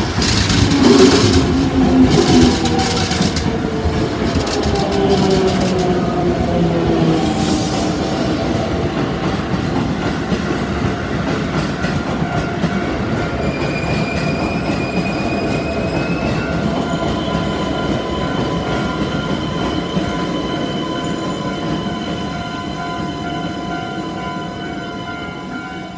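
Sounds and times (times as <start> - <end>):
train wheels clattering: 0.0 - 8.0.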